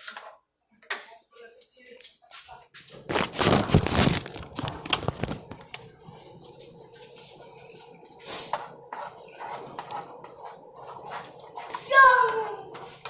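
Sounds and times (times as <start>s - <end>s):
loud crinkling and rustling: 3.0s - 5.8s.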